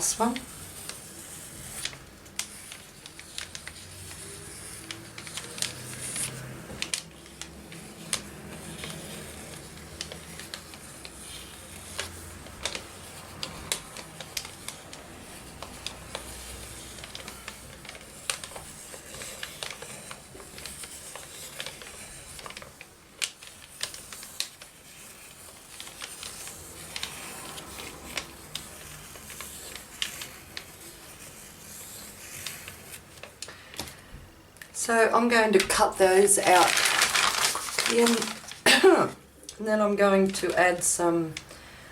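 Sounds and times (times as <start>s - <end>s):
paper handling: 0.0s - 34.1s, 35.2s - 39.1s.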